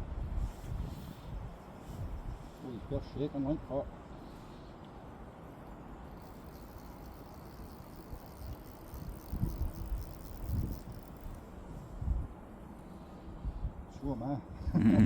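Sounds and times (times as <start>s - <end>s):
wind rumble on microphone: 0.0s - 2.6s, 7.6s - 12.4s.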